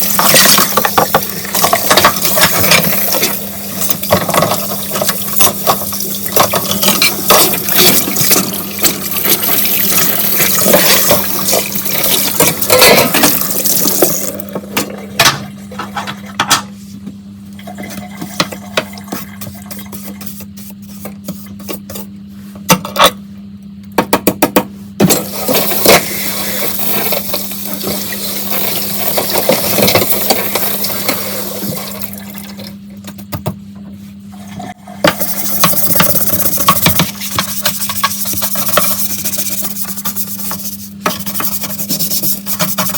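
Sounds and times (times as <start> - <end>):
tap water running into sink: 0.0 - 14.5, 25.2 - 32.7.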